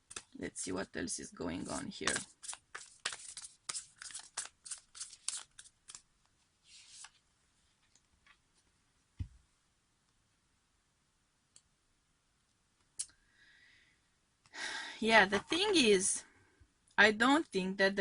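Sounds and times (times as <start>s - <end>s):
cards being shuffled: 1.6s - 8.4s.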